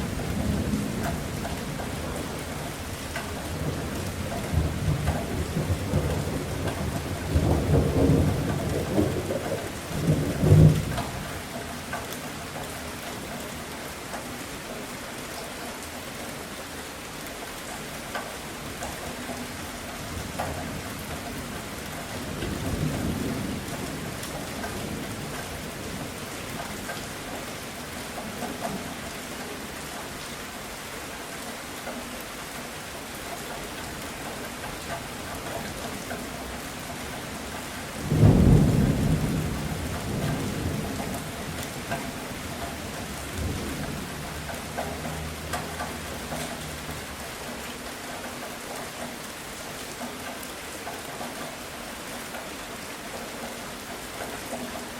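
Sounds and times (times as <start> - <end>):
steady rain falling: 0.0 - 54.9
thunder rumbling: 3.4 - 11.4, 37.4 - 47.0.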